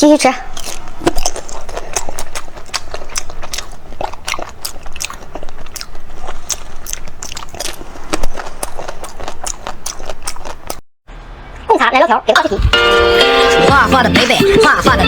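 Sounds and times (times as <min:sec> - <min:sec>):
person chewing crunchy food: 0:00.0 - 0:10.8.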